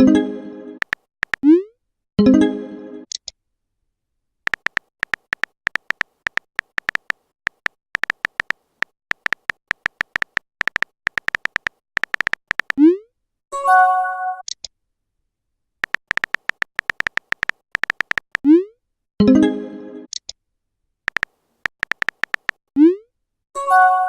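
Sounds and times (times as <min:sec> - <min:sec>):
phone keyboard typing clicks: 0:00.8 - 0:01.5, 0:04.5 - 0:12.8, 0:15.8 - 0:18.5, 0:21.1 - 0:22.6.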